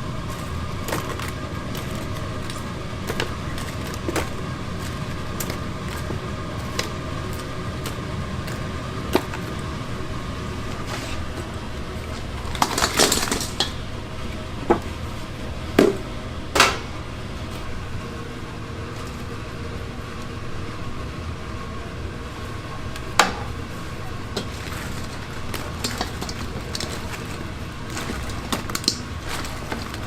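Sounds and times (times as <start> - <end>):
metal utensils clinking: 12.0 - 13.9, 23.2 - 30.0.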